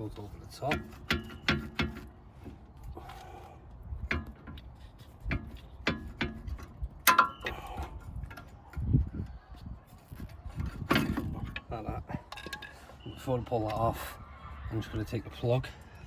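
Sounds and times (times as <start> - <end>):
metallic clicks and knocks: 0.6 - 2.6, 4.0 - 8.9.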